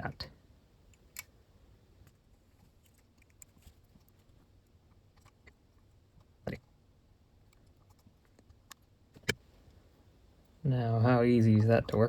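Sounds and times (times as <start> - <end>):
small clicks of handling connector: 0.9 - 1.3, 2.0 - 4.2.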